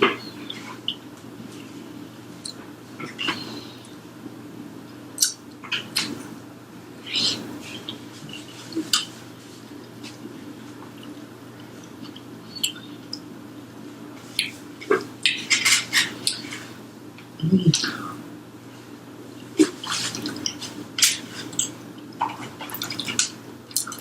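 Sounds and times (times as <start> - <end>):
steady low hum: 0.0 - 24.0
mouth sounds: 17.4 - 18.2.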